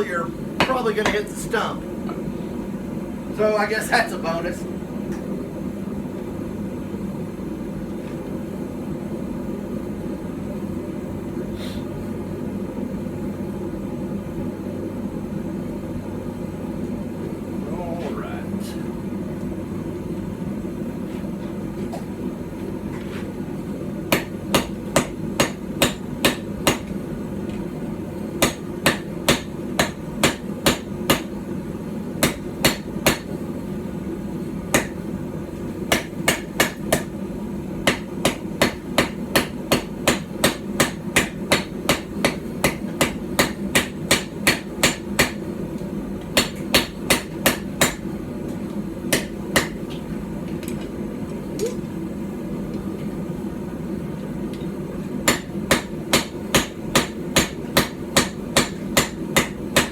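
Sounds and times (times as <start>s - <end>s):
hammer striking steel on anvil: 24.1s - 26.9s, 28.4s - 31.3s, 32.2s - 33.4s, 34.7s - 35.0s, 35.9s - 37.2s, 37.8s - 45.4s, 46.4s - 48.0s, 49.1s - 49.8s, 55.2s - 59.9s.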